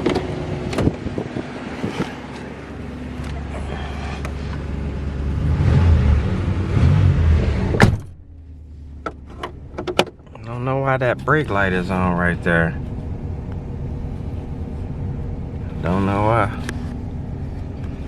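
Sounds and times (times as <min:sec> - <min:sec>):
car engine idling: 0:00.0 - 0:18.0
wind rushing on microphone: 0:00.6 - 0:02.4
car door shutting: 0:07.7 - 0:08.2.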